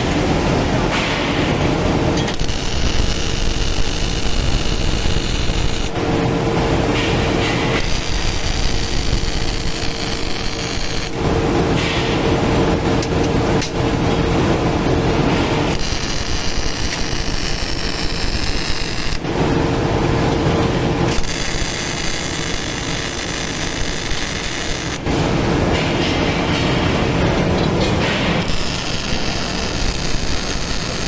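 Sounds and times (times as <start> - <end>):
welding arc crackling: 2.3 - 6.3, 7.7 - 11.2, 15.7 - 19.8, 21.1 - 25.2, 28.4 - 31.0.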